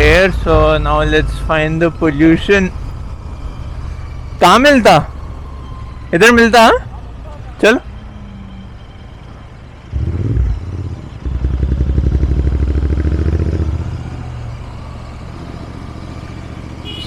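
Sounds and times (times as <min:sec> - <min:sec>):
motorcycle engine revving: 0:09.9 - 0:17.0.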